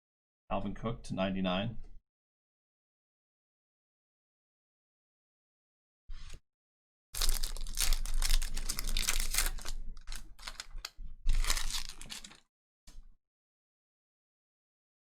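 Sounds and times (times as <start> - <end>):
wrapper crinkling and tearing: 7.2 - 12.5.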